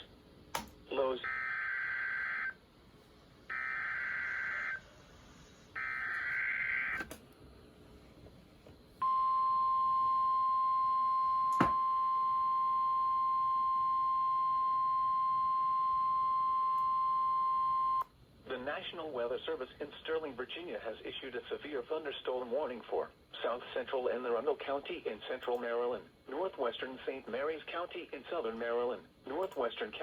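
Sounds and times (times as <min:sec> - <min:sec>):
click: 0:00.5 - 0:00.8
steady warning alarm tone: 0:01.2 - 0:02.6, 0:03.5 - 0:05.1, 0:05.8 - 0:07.0.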